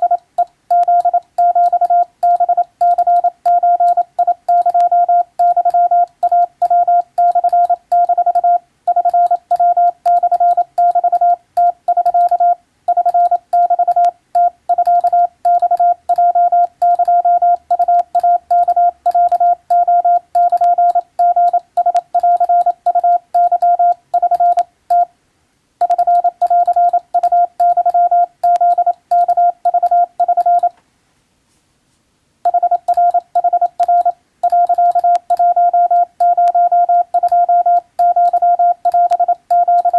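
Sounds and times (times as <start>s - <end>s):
morse code beeps: 0.0s - 25.1s, 25.8s - 30.7s, 32.5s - 39.9s.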